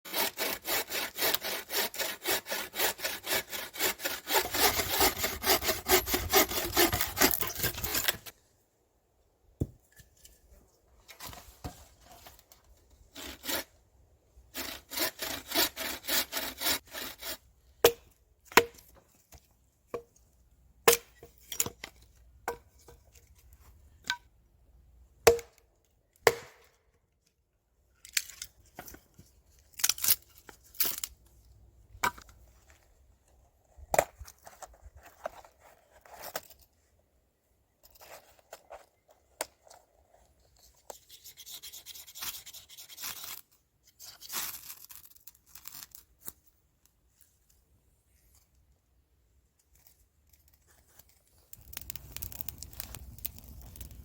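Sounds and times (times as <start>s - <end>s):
saw cutting wood: 0.1s - 8.3s, 14.6s - 17.4s.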